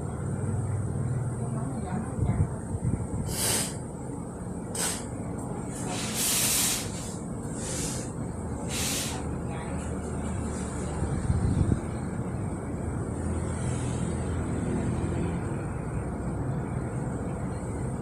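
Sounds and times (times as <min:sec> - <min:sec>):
short bursts of hiss: 0:03.3 - 0:03.8, 0:04.7 - 0:05.1, 0:05.8 - 0:09.3.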